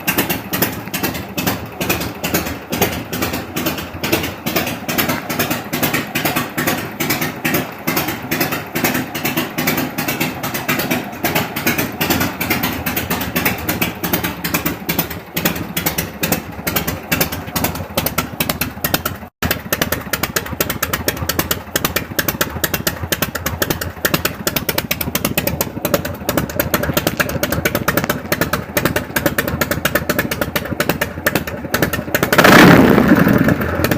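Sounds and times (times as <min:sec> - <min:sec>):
motorcycle engine idling: 0:00.0 - 0:33.9.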